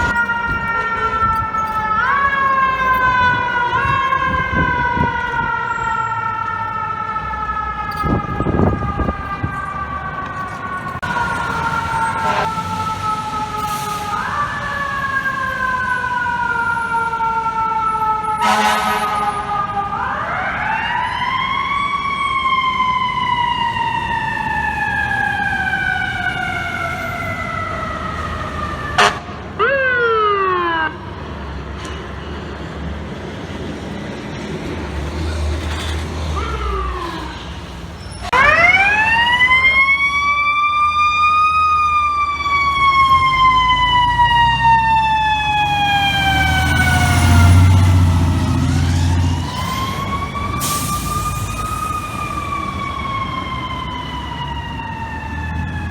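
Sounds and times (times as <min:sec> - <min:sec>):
siren yelps: 0:00.0 - 0:31.0, 0:36.3 - 0:55.9
fire truck siren wailing: 0:00.0 - 0:55.9
air horn blast: 0:12.1 - 0:12.8, 0:18.4 - 0:19.5, 0:29.0 - 0:29.4.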